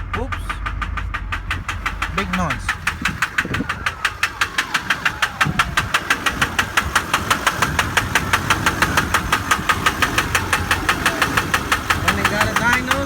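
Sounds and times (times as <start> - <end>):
diesel engine idling with knock: 0.0 - 13.0.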